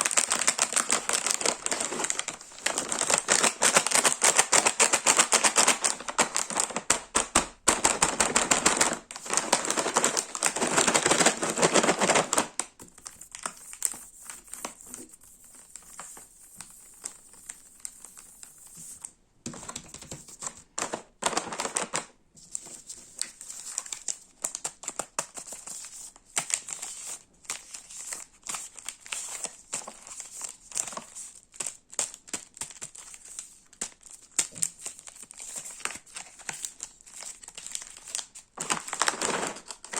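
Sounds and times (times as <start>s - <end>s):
snack packaging crinkling: 0.0s - 7.1s.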